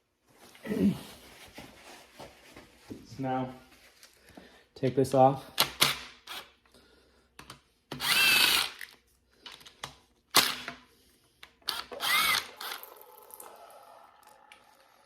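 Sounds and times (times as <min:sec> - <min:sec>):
power tool whirring: 0:08.0 - 0:08.9, 0:10.4 - 0:10.7, 0:11.6 - 0:15.0.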